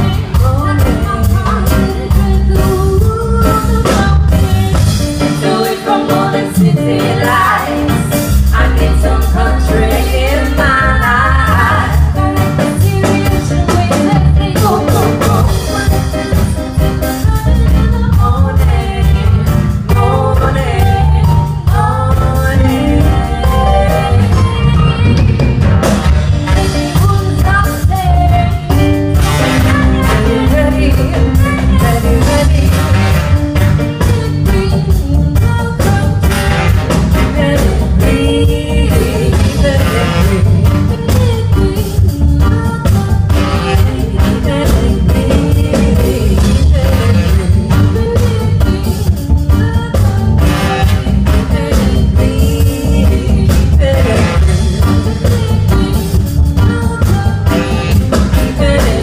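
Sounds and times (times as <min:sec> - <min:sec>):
lead singer singing: 0:00.0 - 0:25.6
live band playing: 0:00.0 - 0:59.0.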